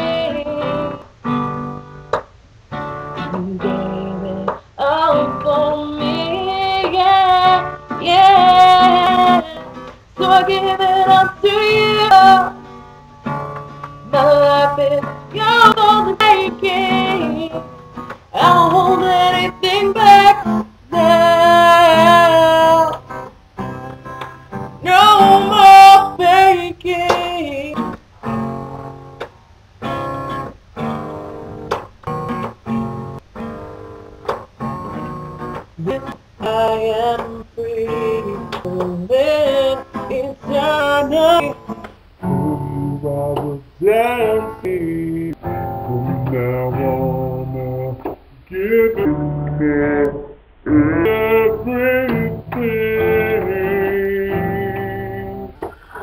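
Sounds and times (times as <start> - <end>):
person singing: 0.0 - 1.1, 3.2 - 12.6, 14.0 - 17.7, 18.4 - 23.0, 24.8 - 27.9, 35.8 - 56.0
acoustic guitar strummed chords: 0.0 - 56.0.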